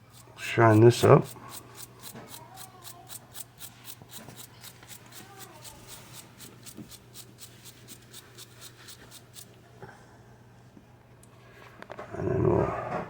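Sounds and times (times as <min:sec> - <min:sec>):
wire brush scrubbing metal: 0:00.0 - 0:09.6.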